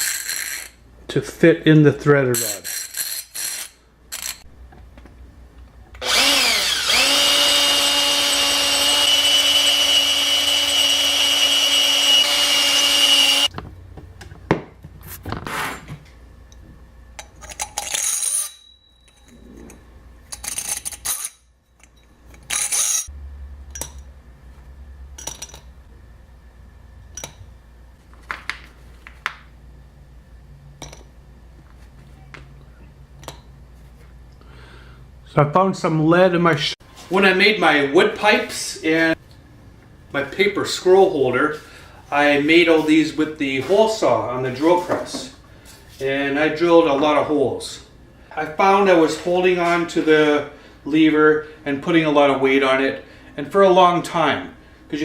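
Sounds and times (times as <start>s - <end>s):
electric drill motor running: 6.0s - 13.5s
metal parts knocking and clicking: 25.2s - 25.7s.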